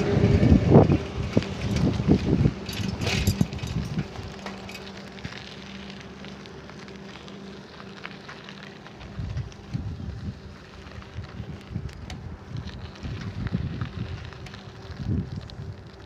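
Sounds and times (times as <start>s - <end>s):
clicks and knocks of bicycle work: 0.8s - 6.2s.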